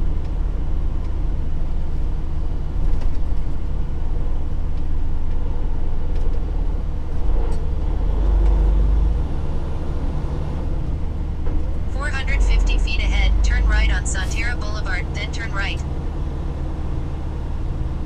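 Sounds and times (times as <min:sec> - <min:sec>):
diesel truck engine idling: 0:10.4 - 0:18.0.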